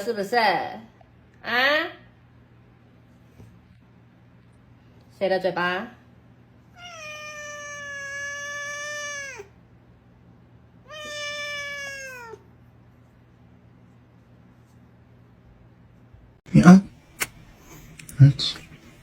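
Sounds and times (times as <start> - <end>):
cat meowing: 6.7 - 9.6, 10.8 - 12.5.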